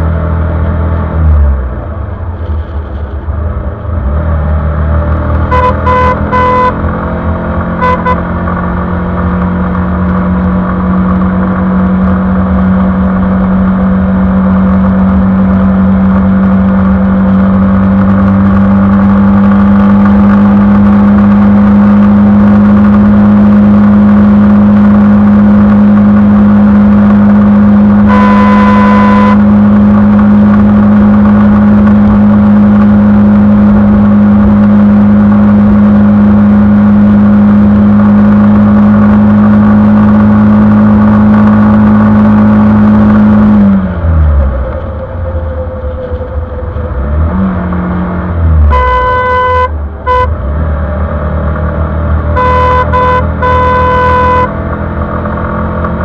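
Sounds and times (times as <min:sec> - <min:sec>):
motorcycle engine revving: 0:04.3 - 0:56.0
horn beeps: 0:05.5 - 0:06.9, 0:07.7 - 0:08.4, 0:28.0 - 0:29.6, 0:48.6 - 0:50.4, 0:52.4 - 0:54.6.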